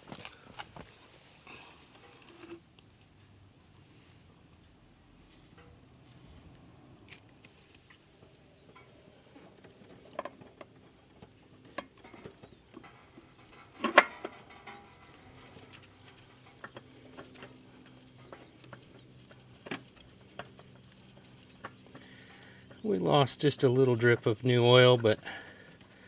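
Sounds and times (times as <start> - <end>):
oil filter clicks and knocks: 15.6 - 22.8.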